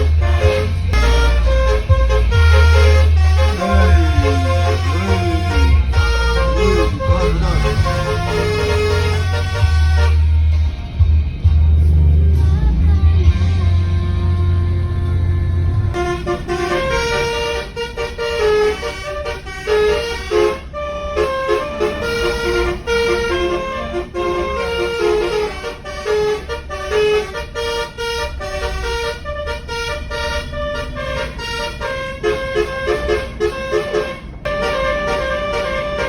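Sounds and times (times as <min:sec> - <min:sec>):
musical air horn tune: 0:00.0 - 0:10.8, 0:15.9 - 0:36.0
low rumble: 0:00.0 - 0:26.9.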